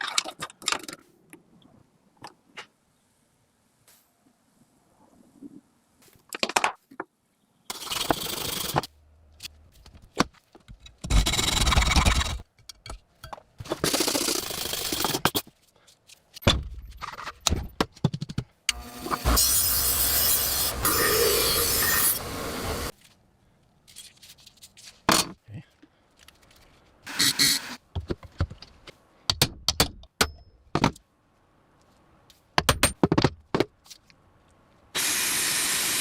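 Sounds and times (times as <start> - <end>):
knife blade grinding and scraping: 18.7 - 22.9.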